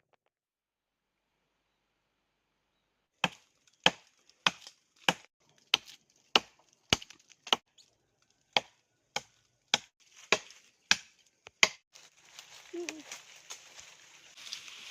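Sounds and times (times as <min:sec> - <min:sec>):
blade chopping wood: 0:03.2 - 0:07.7, 0:08.5 - 0:11.8.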